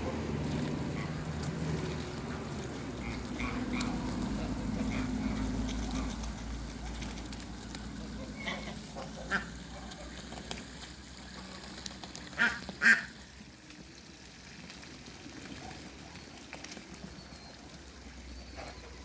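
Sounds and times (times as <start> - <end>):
ducks quacking: 0.0 - 7.2, 7.8 - 13.4.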